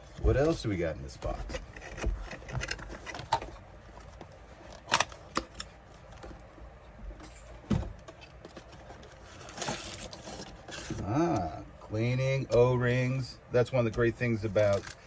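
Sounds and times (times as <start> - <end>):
packaging rustling: 8.0 - 11.0.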